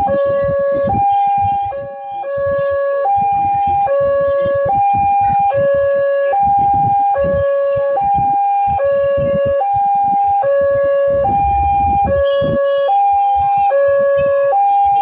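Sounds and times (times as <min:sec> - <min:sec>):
two-tone siren: 0:00.0 - 0:15.0
low rumble: 0:11.0 - 0:12.5.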